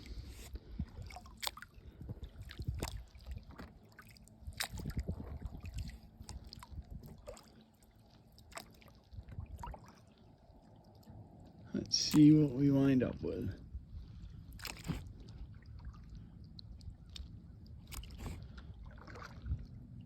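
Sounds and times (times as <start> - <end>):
paddle splashing water: 0.0 - 12.6, 14.0 - 19.8
low rumble: 4.4 - 7.3, 9.0 - 20.0.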